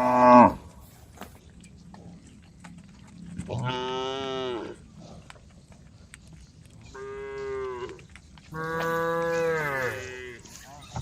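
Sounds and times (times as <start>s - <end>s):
cows mooing: 0.0s - 0.6s, 3.4s - 4.9s, 6.9s - 10.7s.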